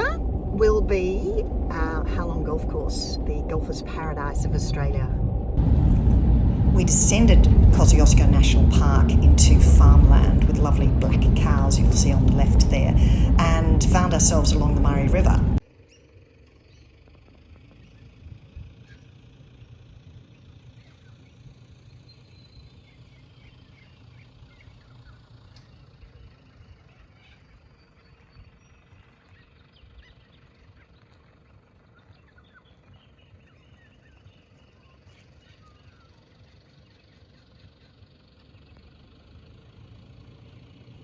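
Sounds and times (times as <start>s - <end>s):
low rumble: 0.0s - 15.6s.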